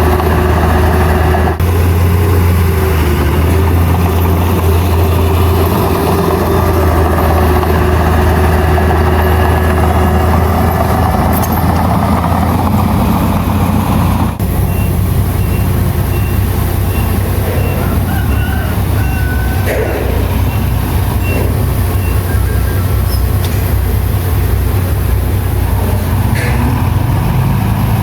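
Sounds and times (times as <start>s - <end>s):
diesel earthmoving machinery running: 0.0s - 28.0s
reversing alarm beeping: 14.4s - 23.4s.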